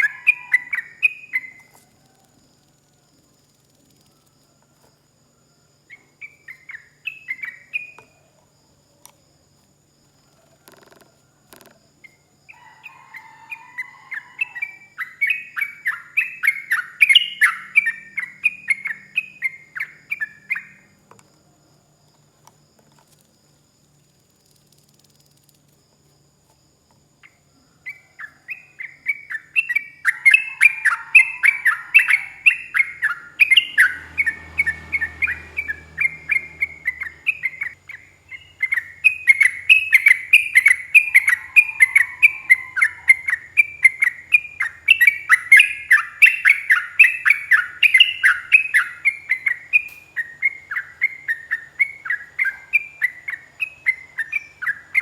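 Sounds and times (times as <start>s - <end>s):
bird chattering song: 0.0s - 1.7s, 5.9s - 8.1s, 14.1s - 20.9s, 27.2s - 55.0s.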